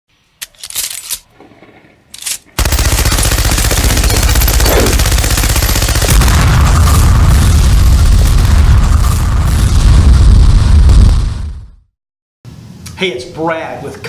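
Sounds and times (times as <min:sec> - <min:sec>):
rapid automatic gunfire: 0:02.6 - 0:09.7.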